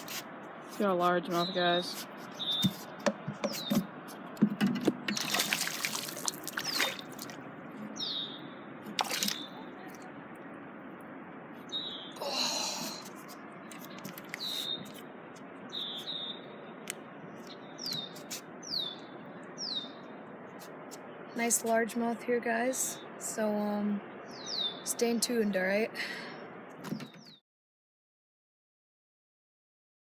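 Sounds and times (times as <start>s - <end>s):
bird chirping: 1.2s - 3.9s, 6.5s - 10.0s, 11.7s - 20.2s, 24.0s - 25.3s, 26.8s - 27.4s
water splashing and trickling: 4.6s - 8.0s, 8.8s - 10.5s.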